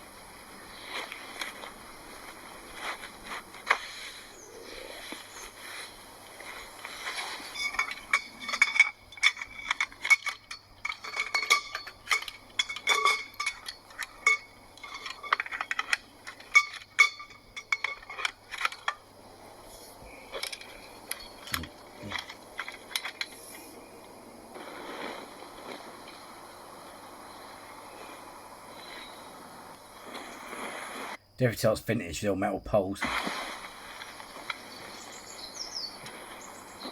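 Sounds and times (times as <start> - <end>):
metal tent poles clinking: 6.4 - 19.1, 20.3 - 23.4.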